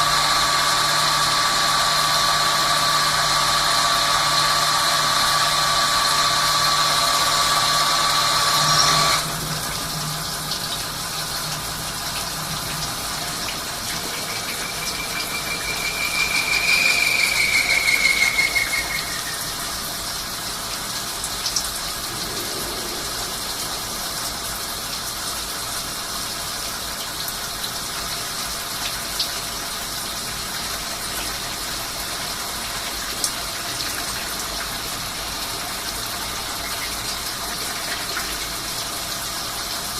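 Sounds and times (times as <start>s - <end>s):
machine whine: 0.0s - 10.0s, 12.4s - 20.5s, 21.6s - 25.8s
coolant hissing: 0.0s - 39.9s
high tone rising and falling: 14.0s - 19.8s.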